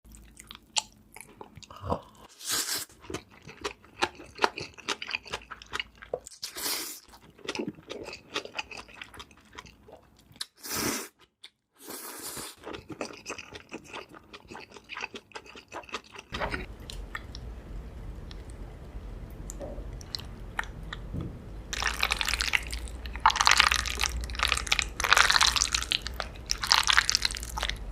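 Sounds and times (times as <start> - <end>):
crunchy chewing: 12.5 - 16.6, 21.7 - 27.9
low hum: 16.3 - 27.9.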